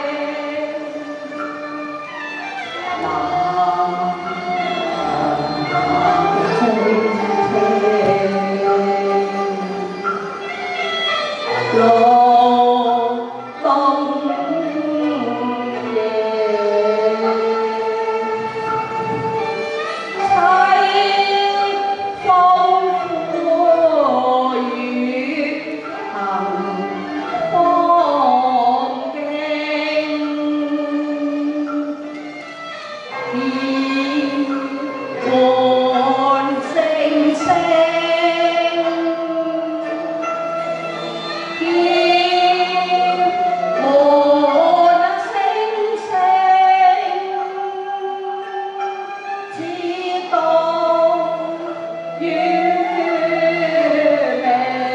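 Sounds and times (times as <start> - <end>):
opera singing with instruments: 0.0 - 54.9
woman singing long notes: 2.8 - 10.0, 41.6 - 48.9.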